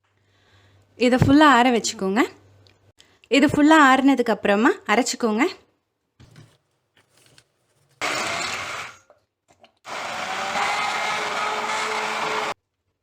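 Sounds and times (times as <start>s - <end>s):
electric blender whining: 8.0s - 9.0s, 9.9s - 12.6s.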